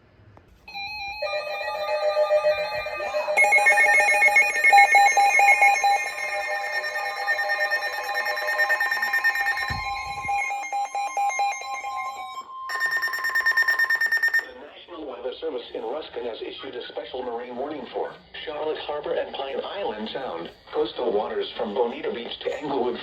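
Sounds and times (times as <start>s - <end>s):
rapid beeping: 0.7s - 14.5s
overlapping alert tones: 0.8s - 14.5s.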